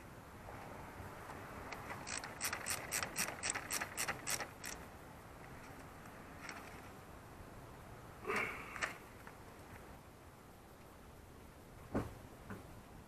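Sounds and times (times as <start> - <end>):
socket ratchet clicking: 1.8 - 4.8.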